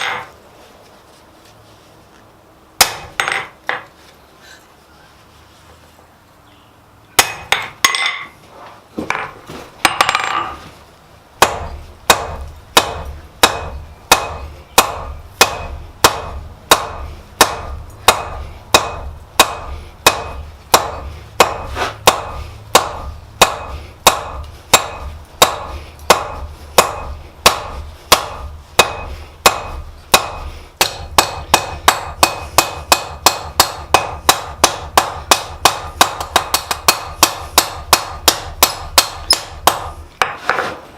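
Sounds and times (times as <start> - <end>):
hammer blows on an anvil: 11.4 - 40.4.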